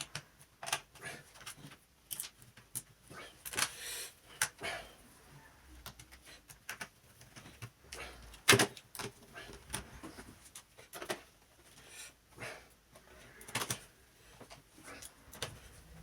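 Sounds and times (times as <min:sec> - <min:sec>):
clicks and knocks of laptop parts: 0:00.0 - 0:04.6, 0:05.8 - 0:11.5, 0:13.3 - 0:15.7.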